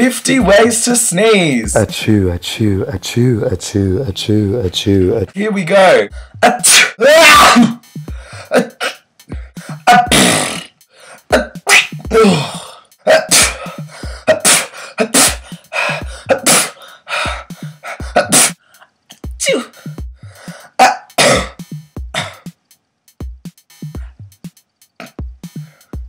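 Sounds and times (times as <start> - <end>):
background music with drum beat: 0.0 - 26.0
man sneezing: 6.1 - 9.0, 9.6 - 16.9, 17.5 - 18.6, 19.4 - 20.0, 20.6 - 21.6.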